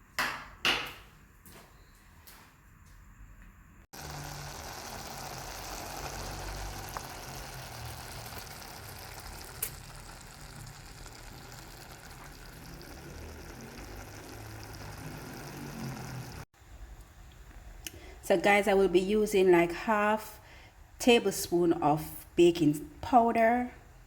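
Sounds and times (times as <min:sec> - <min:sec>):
pot sizzling: 0:03.9 - 0:16.5.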